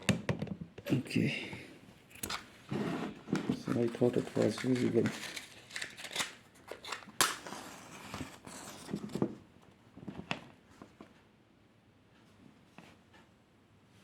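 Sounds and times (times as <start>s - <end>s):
clicks of small hard objects handled: 3.6s - 7.4s.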